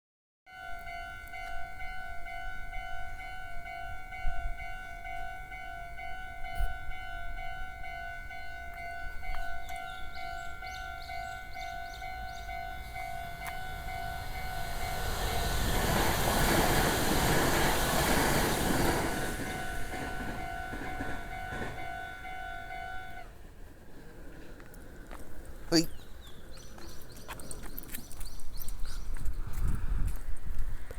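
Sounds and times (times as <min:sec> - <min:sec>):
railroad crossing bell ringing: 0:00.5 - 0:23.4
train passing: 0:00.6 - 0:28.8.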